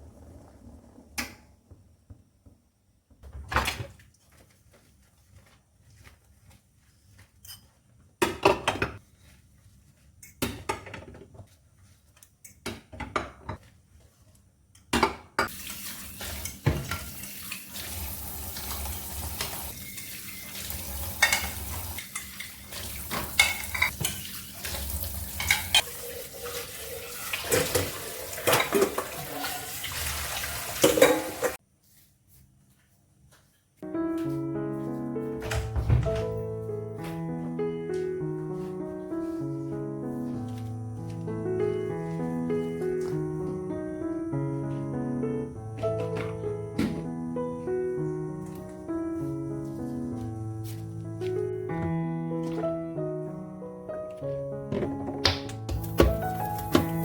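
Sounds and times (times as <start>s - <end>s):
dishes and cutlery clinking: 7.4s - 9.0s, 18.6s - 25.9s, 27.5s - 29.7s, 30.8s - 31.6s
dishes and pots clattering: 7.4s - 9.0s, 14.9s - 26.7s, 27.4s - 29.9s, 30.8s - 31.6s
kitchen tap running: 15.4s - 31.6s, 55.2s - 57.0s.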